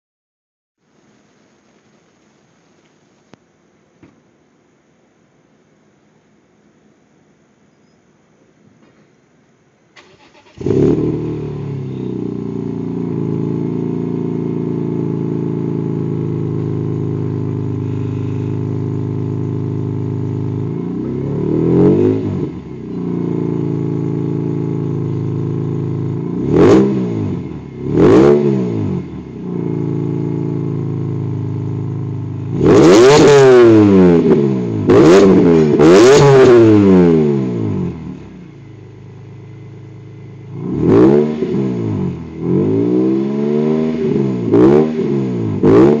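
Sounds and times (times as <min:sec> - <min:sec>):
engine revving: 0:10.0 - 0:15.0, 0:16.1 - 0:30.8, 0:32.4 - 0:38.4, 0:40.4 - 0:46.0
car engine idling: 0:10.0 - 0:21.5, 0:22.4 - 0:28.2, 0:29.0 - 0:32.9, 0:37.7 - 0:41.0.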